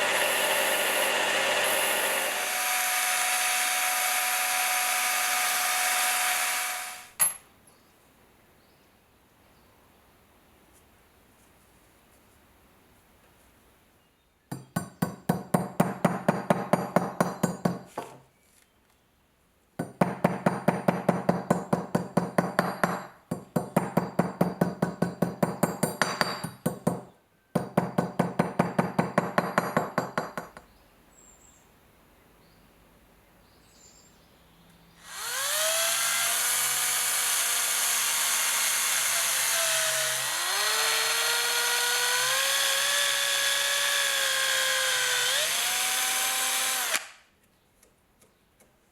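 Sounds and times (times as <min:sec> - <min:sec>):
rhythmic hand tool strokes: 0:00.0 - 0:07.1
power tool whining: 0:00.0 - 0:07.2, 0:35.0 - 0:47.2.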